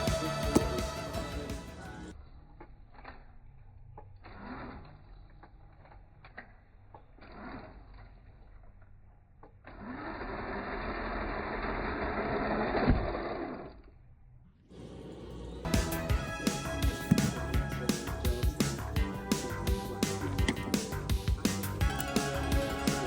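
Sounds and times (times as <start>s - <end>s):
thump: 17.0s - 17.6s.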